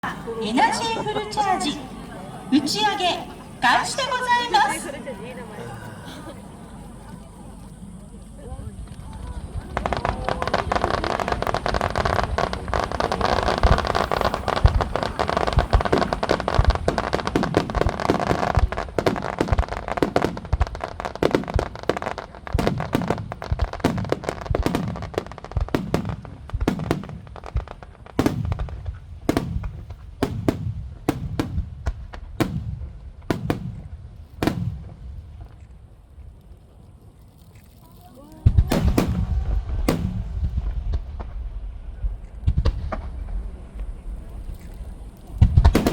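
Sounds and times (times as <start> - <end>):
fireworks bursts and crackle: 0.0 - 45.9
fireworks booms with rumble: 8.7 - 35.9, 38.4 - 45.9.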